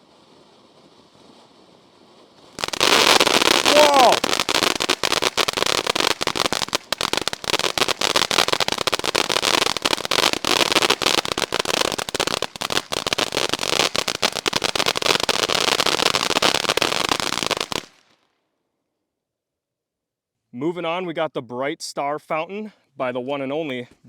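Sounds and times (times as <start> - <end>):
firework fountain hissing and crackling: 0.0 - 18.2.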